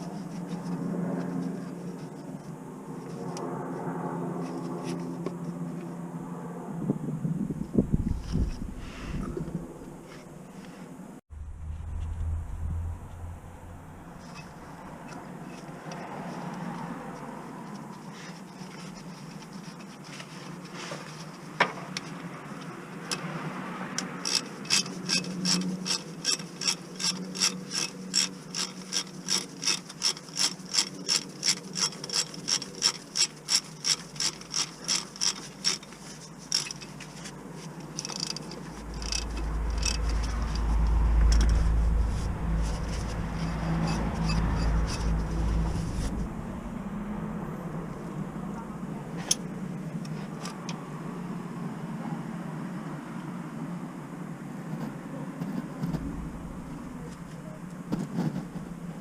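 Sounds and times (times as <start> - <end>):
low rumble: 6.8 - 10.1, 11.2 - 15.3, 38.7 - 49.8, 55.5 - 59.0
socket ratchet clicking: 37.8 - 40.7.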